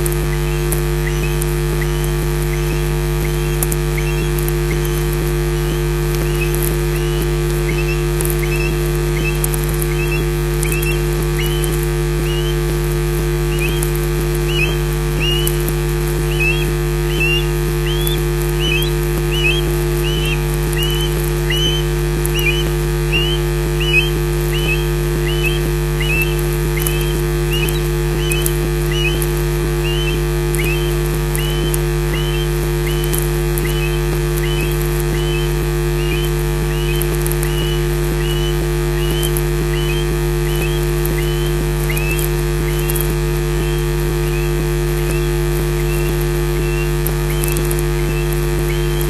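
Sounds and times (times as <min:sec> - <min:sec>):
steady electrical hum: 0:00.0 - 0:49.0
osprey high whistled calls: 0:00.1 - 0:12.8, 0:13.5 - 0:49.0.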